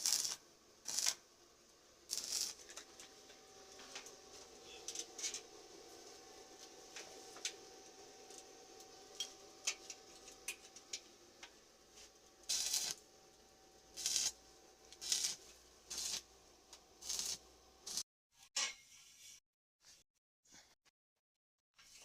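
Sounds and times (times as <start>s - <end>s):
scratchy scraping strokes: 0.0s - 1.2s, 2.1s - 2.9s, 11.9s - 13.0s, 14.0s - 14.4s, 15.0s - 16.3s, 17.0s - 18.0s.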